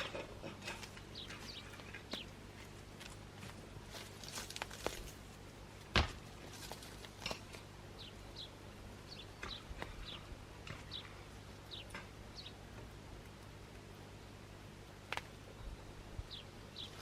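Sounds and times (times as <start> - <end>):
small birds chirping: 0.0 - 5.2, 6.7 - 17.0.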